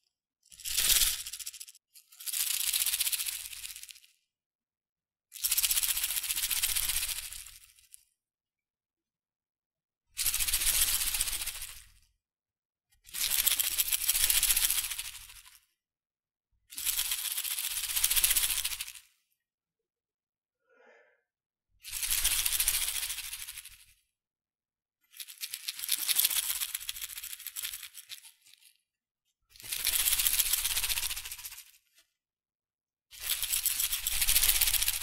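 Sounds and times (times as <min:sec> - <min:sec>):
shakers rattling grains: 0:00.5 - 0:04.0, 0:13.1 - 0:15.6, 0:16.7 - 0:19.0, 0:21.9 - 0:23.9, 0:25.1 - 0:28.8, 0:29.5 - 0:31.8, 0:33.1 - 0:35.0.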